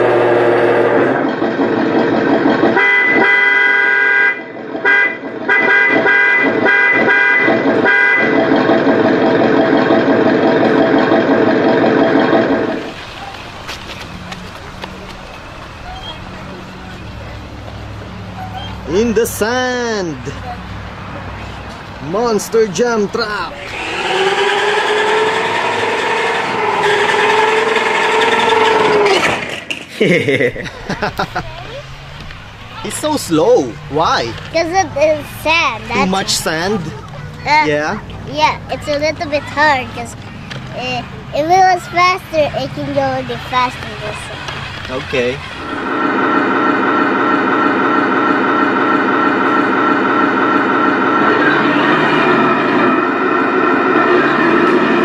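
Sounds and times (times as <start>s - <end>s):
horn honking toots: 0.0s - 1.3s, 2.6s - 8.6s, 23.6s - 29.4s
steady dense sound: 0.0s - 55.0s
toy truck motor whining: 23.6s - 29.7s.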